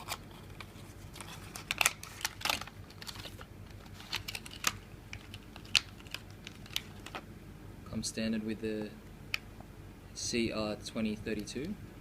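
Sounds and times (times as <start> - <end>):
packaging being handled: 0.0 - 7.2.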